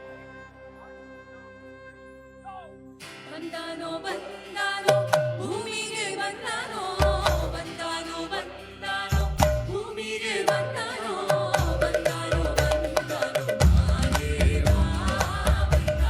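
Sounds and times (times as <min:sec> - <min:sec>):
devotional music: 0:00.0 - 0:16.0
person singing: 0:03.3 - 0:16.0
heavy low drum beats: 0:09.1 - 0:09.9, 0:11.5 - 0:16.0.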